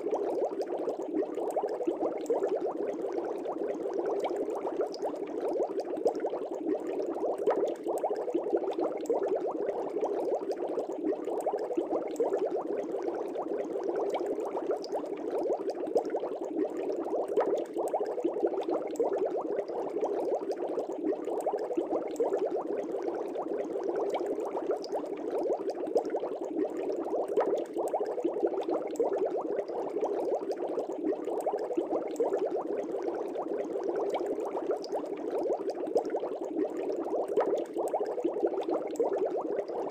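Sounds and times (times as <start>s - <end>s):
fish tank bubbling: 0.0s - 39.9s.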